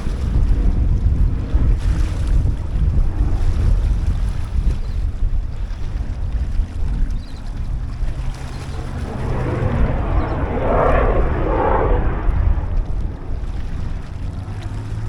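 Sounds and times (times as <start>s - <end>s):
wind buffeting microphone: 0.0s - 15.0s
rushing noise: 8.1s - 13.8s.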